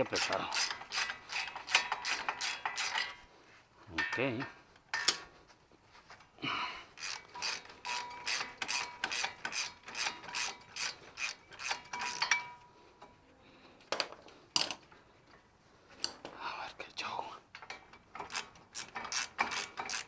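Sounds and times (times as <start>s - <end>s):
ratchet wrench clicking: 0.0s - 3.0s, 7.0s - 12.4s, 18.2s - 20.0s.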